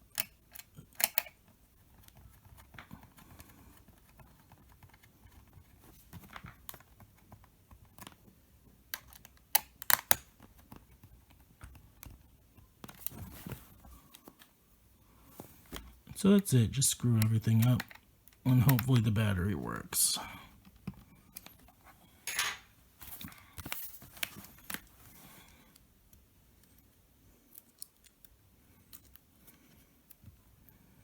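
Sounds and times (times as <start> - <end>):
screwdriver and plastic parts clicking: 0.0 - 1.4, 17.2 - 19.0
sharp plastic clicks: 0.0 - 1.4, 8.9 - 10.8.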